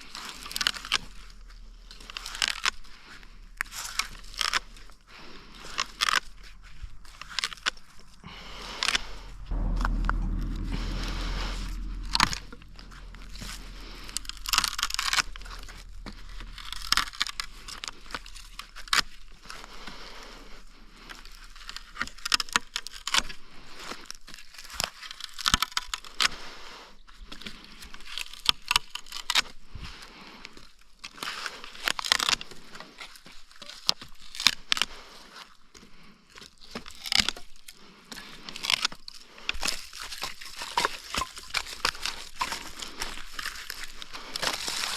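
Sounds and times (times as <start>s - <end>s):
low hum: 0.0s - 20.5s.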